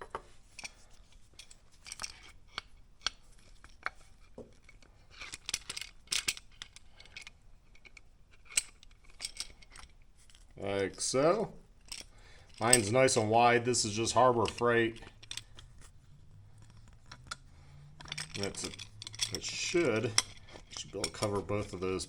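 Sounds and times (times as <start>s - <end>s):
metal clamp clicking: 11.8s - 22.0s.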